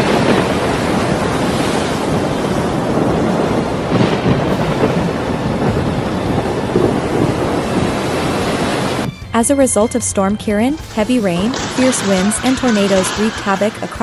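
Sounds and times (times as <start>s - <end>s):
rough surging water: 0.0s - 9.1s
wind buffeting microphone: 0.0s - 9.2s
storm wind: 0.0s - 9.4s.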